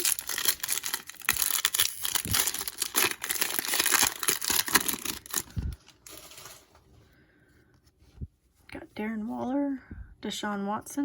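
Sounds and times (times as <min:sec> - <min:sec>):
wrapper tearing and crinkling: 0:00.0 - 0:05.8.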